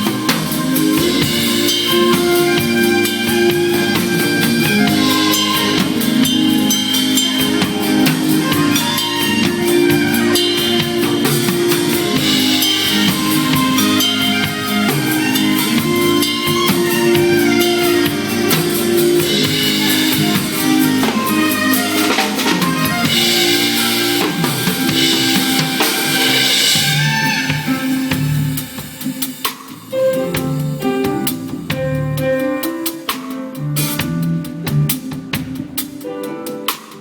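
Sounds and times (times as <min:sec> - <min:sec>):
bass notes: 0:00.0 - 0:29.2, 0:29.9 - 0:32.6, 0:33.6 - 0:35.7
band music: 0:00.0 - 0:37.0
drum kit playing: 0:00.0 - 0:37.0.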